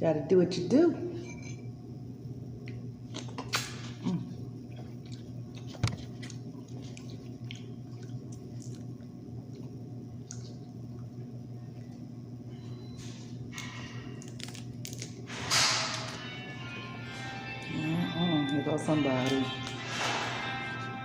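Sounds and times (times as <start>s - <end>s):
steady low hum: 0.0s - 21.0s
chewing and wet squishing: 2.6s - 15.2s.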